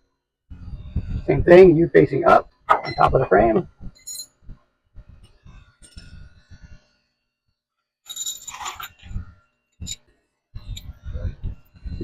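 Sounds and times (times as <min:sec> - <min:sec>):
metal hardware clinking: 0:08.1 - 0:09.0
metal scraping: 0:08.1 - 0:10.1.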